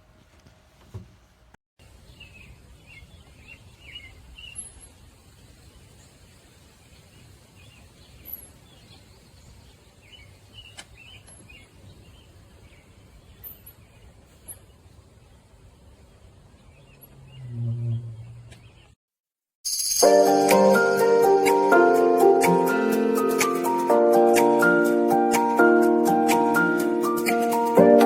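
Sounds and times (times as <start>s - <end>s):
small birds chirping: 1.8s - 19.0s.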